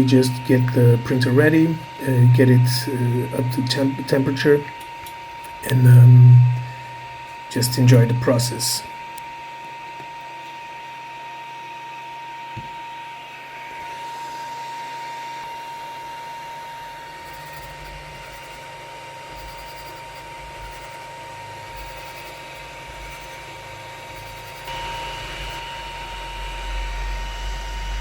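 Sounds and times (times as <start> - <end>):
stepper motors rumbling: 0.0 - 8.9
printer fan hum with whine: 0.0 - 28.0.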